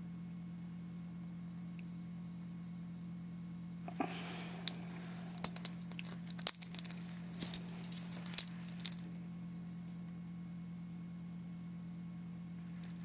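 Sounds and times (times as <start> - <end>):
metal watch bracelet clinking: 5.4 - 9.0.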